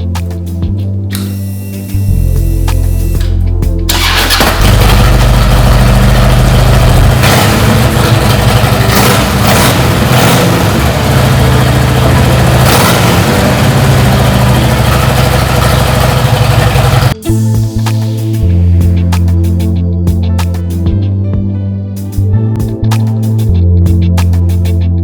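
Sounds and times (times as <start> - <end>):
motorcycle engine revving: 3.9 - 17.2.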